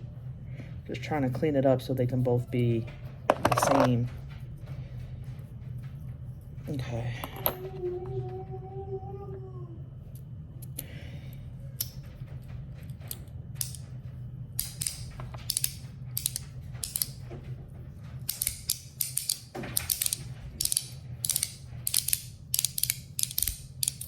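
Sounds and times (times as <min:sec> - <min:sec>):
metal slider clicking: 0:14.6 - 0:17.2, 0:18.3 - 0:24.0.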